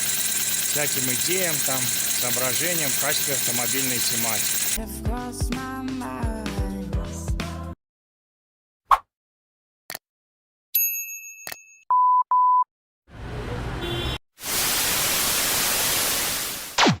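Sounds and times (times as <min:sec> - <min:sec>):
short electronic beeps: 0:00.0 - 0:04.8.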